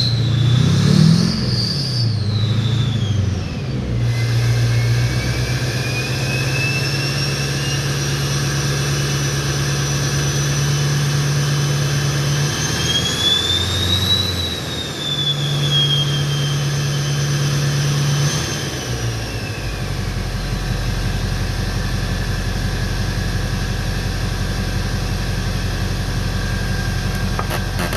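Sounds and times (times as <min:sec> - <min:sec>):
turbo whistle: 0:00.0 - 0:03.4, 0:12.7 - 0:17.2, 0:27.1 - 0:27.9
diesel engine under throttle: 0:00.0 - 0:27.9.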